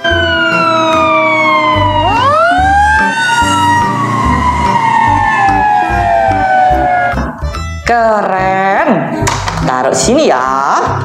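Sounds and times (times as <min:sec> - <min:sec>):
fire engine siren wailing: 0:00.0 - 0:07.4.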